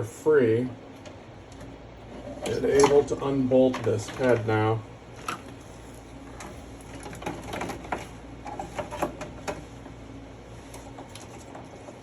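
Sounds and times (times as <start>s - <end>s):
faint steady hum: 0.0s - 12.0s
clicks and rattles of parts: 2.4s - 4.6s, 6.4s - 9.6s.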